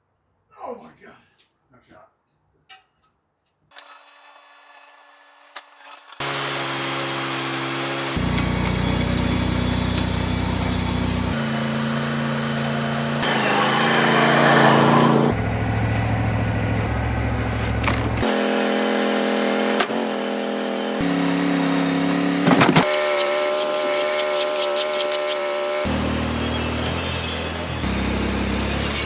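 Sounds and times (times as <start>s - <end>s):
band sawmill running: 6.2s - 29.0s
steady pitched whine: 8.2s - 11.4s.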